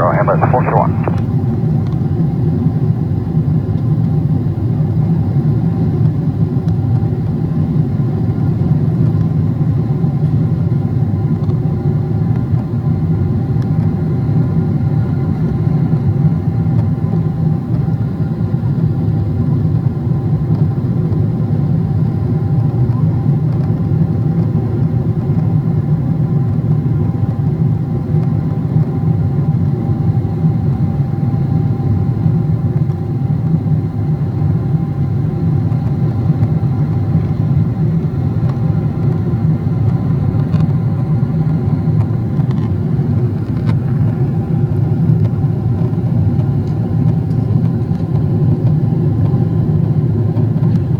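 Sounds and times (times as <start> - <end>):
faint steady whine tones: 0.0 - 1.6
rumble of airflow and jet engines: 0.0 - 50.9.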